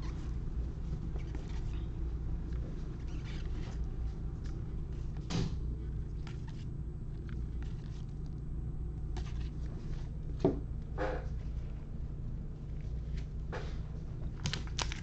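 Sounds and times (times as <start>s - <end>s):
low hum: 0.0s - 15.0s
trading cards rustling: 14.4s - 15.0s.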